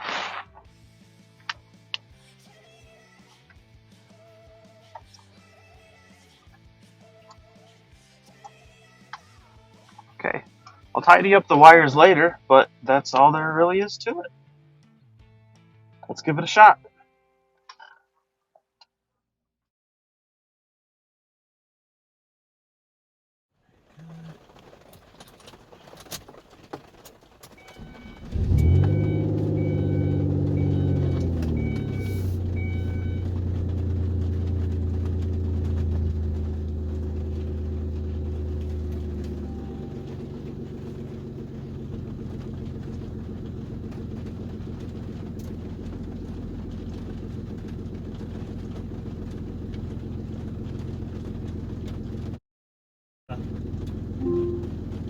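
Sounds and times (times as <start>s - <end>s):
car engine starting and idling: 23.7s - 52.4s, 53.3s - 55.0s
short high beep: 27.6s - 33.3s, 54.2s - 54.8s.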